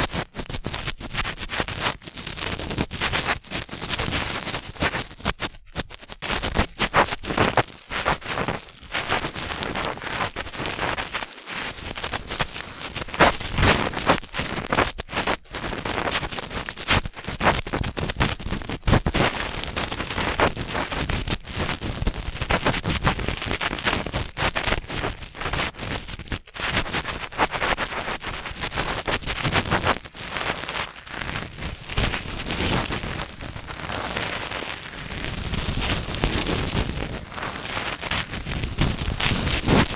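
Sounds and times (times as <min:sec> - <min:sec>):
cotton swabs rubbing in microphone ear: 0:04.8 - 0:16.4, 0:26.7 - 0:39.9.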